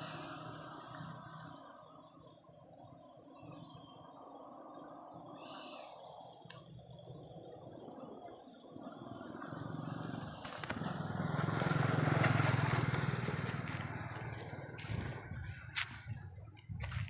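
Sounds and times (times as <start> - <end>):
vehicle passing by: 8.8 - 17.0.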